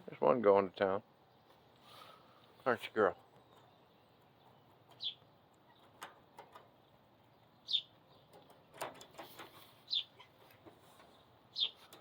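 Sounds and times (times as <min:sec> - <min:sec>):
bird chirping: 0:01.1 - 0:12.0
faint rustling and crackling: 0:08.3 - 0:12.0.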